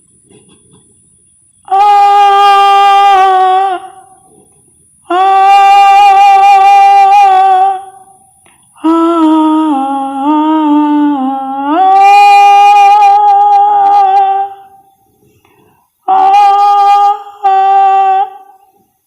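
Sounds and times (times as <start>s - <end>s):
man imitating eerie wailing hums: 1.7s - 4.2s, 5.0s - 8.1s, 8.8s - 14.8s, 16.0s - 18.8s.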